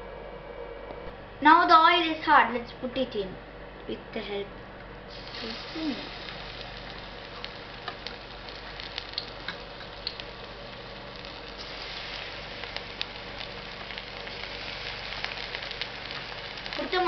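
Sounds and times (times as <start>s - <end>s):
hot oil sizzling in a pan: 5.1s - 17.0s
crackling pops: 5.8s - 17.0s.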